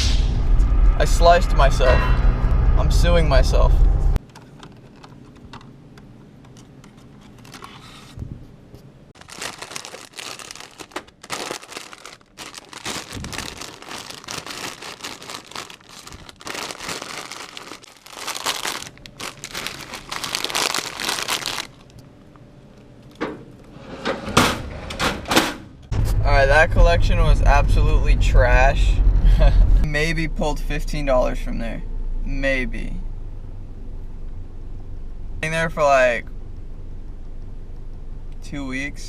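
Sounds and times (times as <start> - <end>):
plastic packaging crinkling: 9.2 - 22.1.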